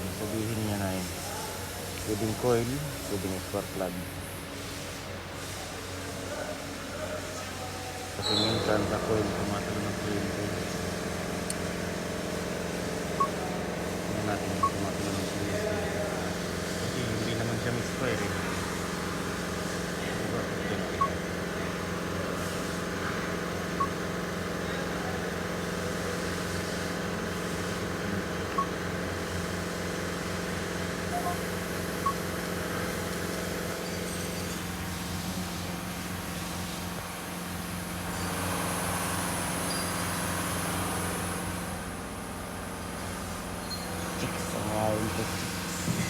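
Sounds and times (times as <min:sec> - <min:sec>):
short high beeps: 0:14.6 - 0:14.8, 0:31.1 - 0:32.2.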